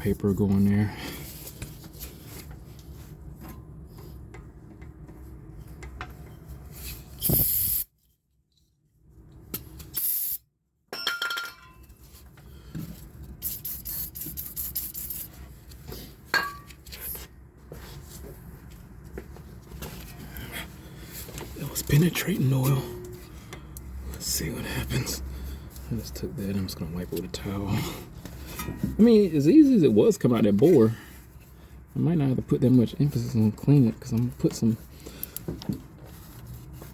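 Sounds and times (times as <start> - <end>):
sandpaper scraping metal: 13.4 - 15.3.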